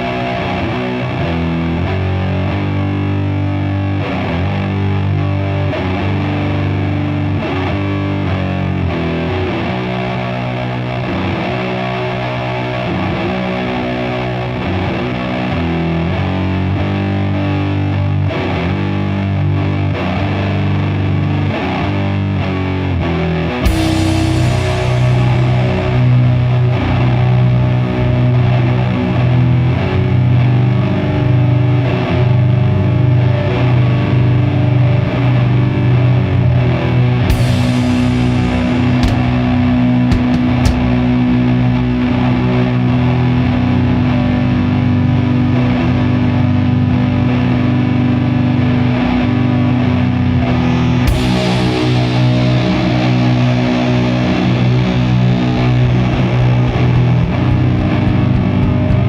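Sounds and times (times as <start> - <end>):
distorted electric guitars and bass: 0.0 - 59.0
cymbal crash: 23.7 - 27.2, 37.3 - 41.8, 50.9 - 56.1.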